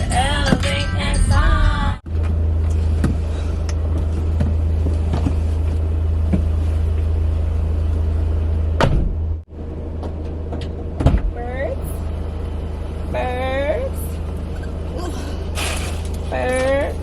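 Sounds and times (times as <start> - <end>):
music with singing: 0.0 - 2.0
car engine rumble: 0.0 - 17.0.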